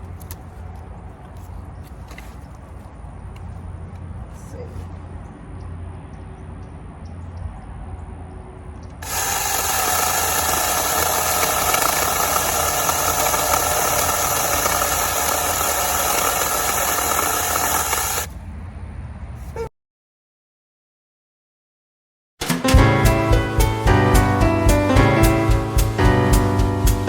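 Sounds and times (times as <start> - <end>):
mini chainsaw motor whine: 9.0 - 18.3.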